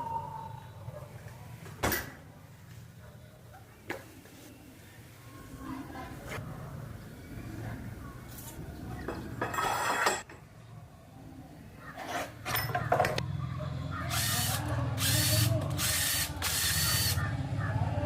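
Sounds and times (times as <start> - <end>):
power tool bursts: 14.1 - 17.2.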